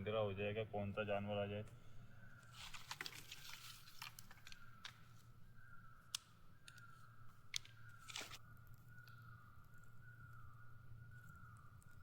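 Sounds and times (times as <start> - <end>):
dry leaves and twigs crackling: 2.4 - 5.3, 7.5 - 8.4.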